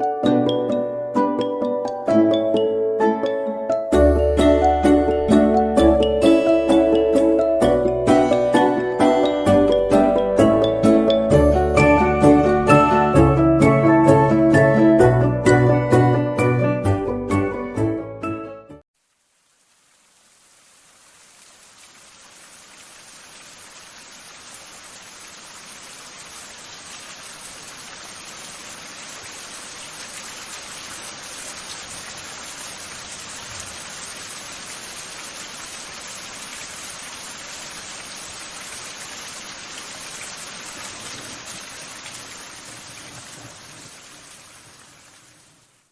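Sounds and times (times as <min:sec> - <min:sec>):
steady rain falling: 0:19.0 - 0:45.9.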